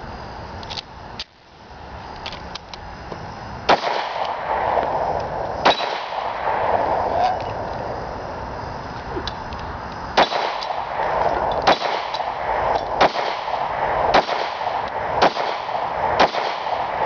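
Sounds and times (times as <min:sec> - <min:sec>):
steady background noise: 0:00.0 - 0:17.0
gunshots: 0:03.7 - 0:07.3, 0:10.2 - 0:17.0.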